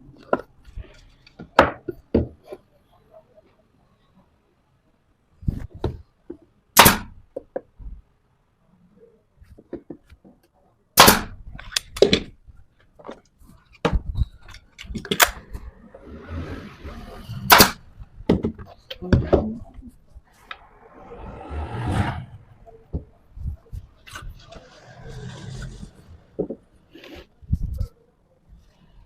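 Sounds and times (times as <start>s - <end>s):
loud knocks and bangs on wood: 17.5s - 19.5s.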